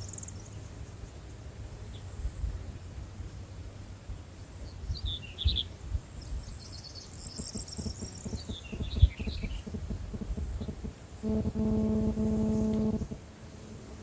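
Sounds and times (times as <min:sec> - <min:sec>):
small birds chirping: 0:00.0 - 0:02.9, 0:04.3 - 0:11.7
dull thumps: 0:07.3 - 0:13.2.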